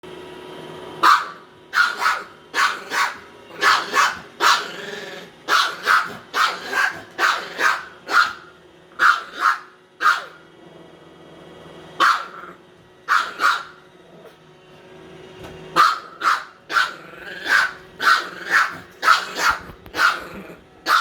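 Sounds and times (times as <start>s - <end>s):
dog barking: 1.0s - 4.8s, 5.5s - 10.4s, 12.0s - 12.5s, 13.1s - 13.8s, 15.8s - 21.0s.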